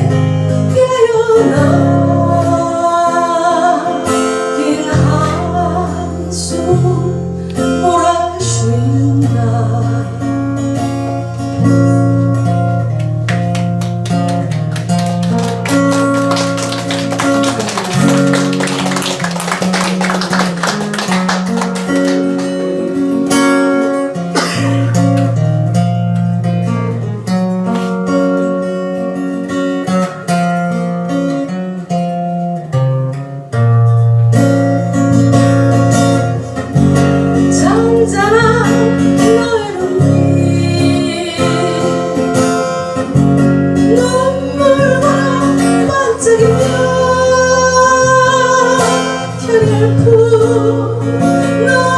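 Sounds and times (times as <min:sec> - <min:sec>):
person singing: 0:00.0 - 0:10.3, 0:37.4 - 0:43.1, 0:43.8 - 0:51.9
acoustic guitar chords: 0:00.0 - 0:51.9.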